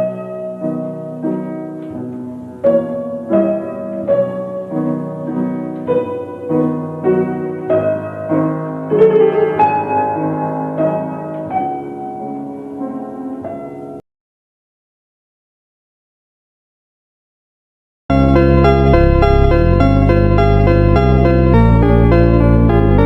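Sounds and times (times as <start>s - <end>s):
slow piano chords and notes: 0.0s - 14.0s, 18.1s - 23.0s.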